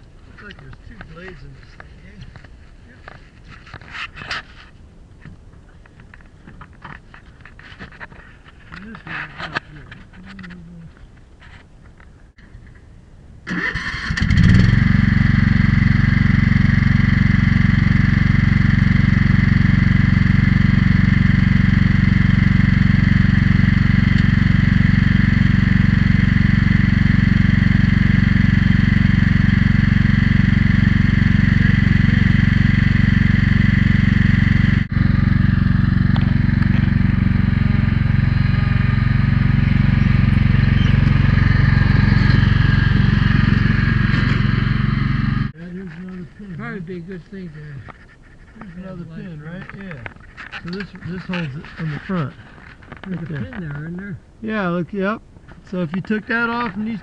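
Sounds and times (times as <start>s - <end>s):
lawn mower engine: 13.4s - 53.3s.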